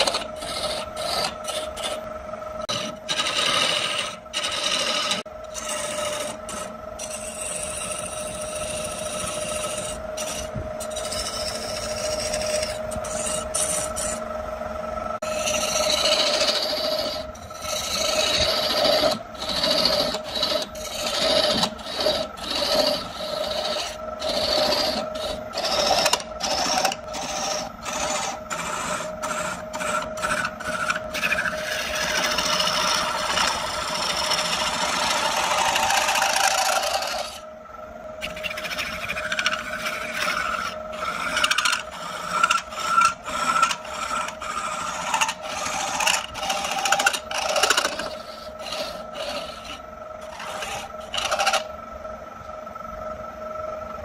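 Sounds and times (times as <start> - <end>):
tool rasping against wood: 0.0 - 2.0, 2.6 - 14.2, 15.2 - 37.4, 38.2 - 51.7
lathe whine: 0.0 - 54.0.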